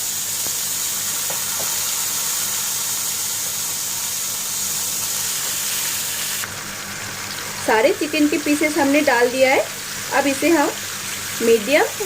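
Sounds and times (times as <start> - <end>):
chicken sizzling in hot oil: 0.0 - 12.0
faint taps in pan: 1.2 - 1.8.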